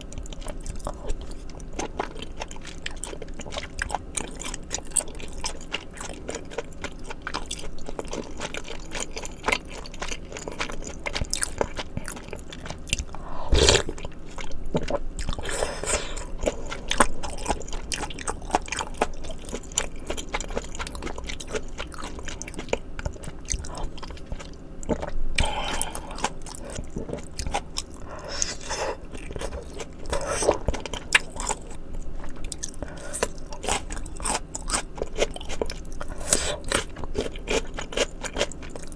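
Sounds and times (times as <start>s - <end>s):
close chewing and biting: 0.0s - 38.9s.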